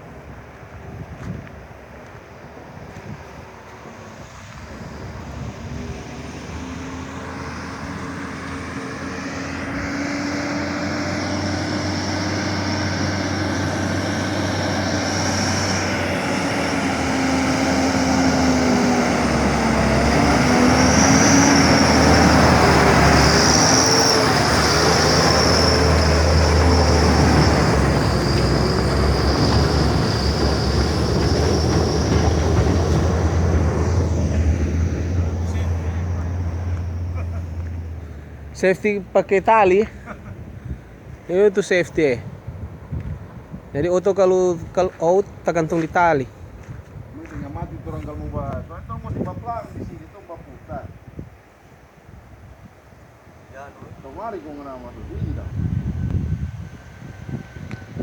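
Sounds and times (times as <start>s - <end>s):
bulldozer diesel engine labouring: 4.7s - 50.4s, 54.0s - 58.0s
crawler tracks squealing and clattering: 9.3s - 37.0s.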